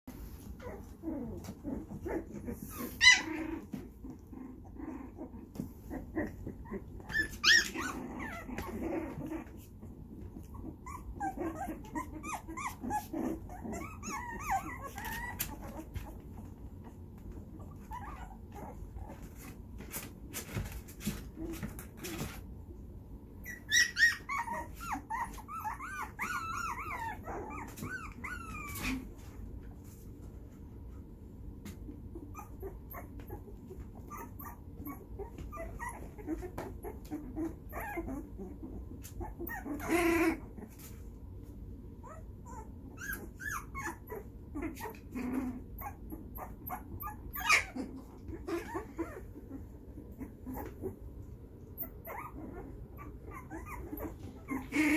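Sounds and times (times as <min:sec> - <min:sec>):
puppies whimpering and squealing: 0:00.1 - 0:22.5, 0:23.2 - 0:30.0, 0:31.7 - 0:54.9
puppy yelp: 0:00.6 - 0:03.8, 0:06.2 - 0:09.6, 0:10.4 - 0:16.2, 0:17.6 - 0:19.5, 0:23.4 - 0:29.2, 0:32.2 - 0:40.9, 0:42.0 - 0:51.0, 0:51.8 - 0:54.9.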